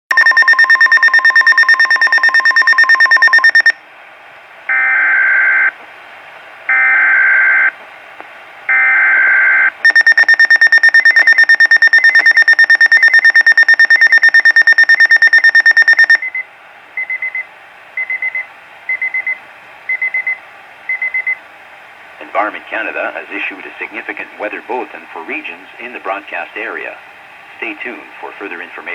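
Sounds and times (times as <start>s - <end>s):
pulsing electronic alarm tone: 0.1s - 3.8s, 8.7s - 16.2s
short beeps: 0.1s - 3.8s, 9.8s - 16.4s.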